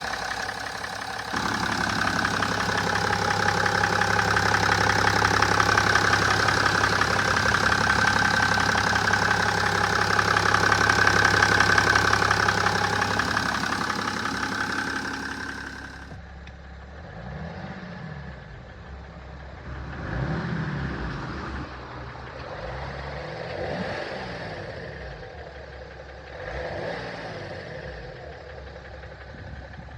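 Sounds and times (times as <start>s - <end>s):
engine revving: 0.0s - 16.2s
diesel engine knocking: 0.0s - 16.3s, 28.3s - 29.9s.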